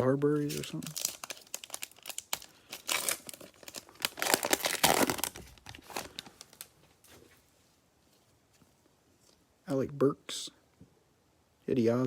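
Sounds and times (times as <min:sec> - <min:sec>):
wrapper crinkling and tearing: 0:00.0 - 0:06.8.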